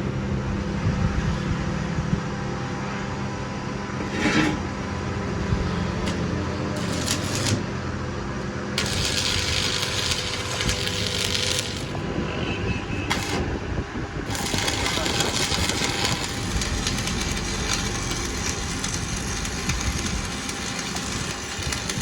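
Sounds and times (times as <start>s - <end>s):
low machine hum: 0.0s - 22.0s
scraping clank: 4.0s - 4.8s.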